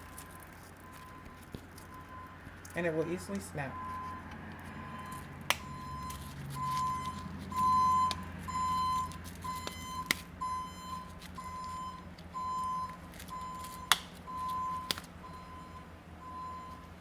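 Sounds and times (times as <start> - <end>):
electronic beeping: 4.8 - 16.8.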